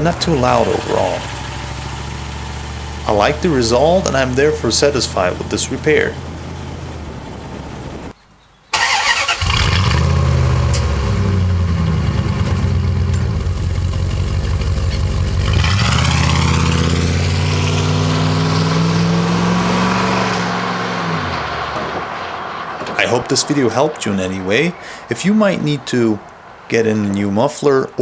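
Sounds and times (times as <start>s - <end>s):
engine exhaust roaring: 0.0s - 8.1s, 8.7s - 28.0s.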